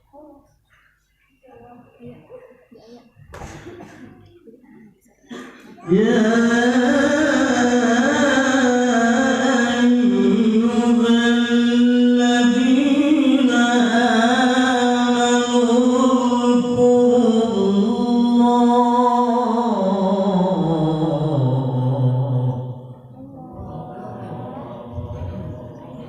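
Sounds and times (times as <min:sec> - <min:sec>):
man chanting melodically: 0:05.8 - 0:26.0.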